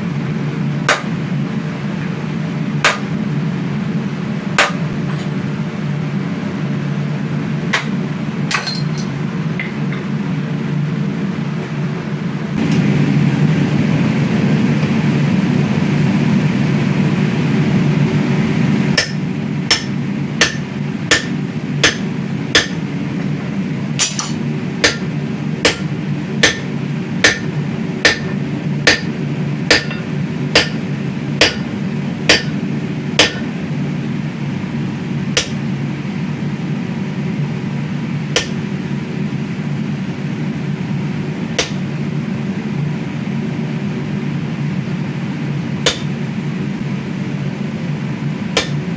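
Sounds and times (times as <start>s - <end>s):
steady mechanical hum: 0.0s - 48.9s
hammer striking metal on anvil: 0.9s - 1.2s, 2.8s - 3.1s, 4.6s - 5.3s, 7.7s - 10.1s, 19.0s - 22.8s, 24.0s - 31.7s, 32.3s - 32.6s, 33.2s - 33.6s, 35.4s - 35.7s, 38.3s - 38.7s, 41.6s - 41.9s, 45.8s - 46.2s, 48.6s - 48.9s.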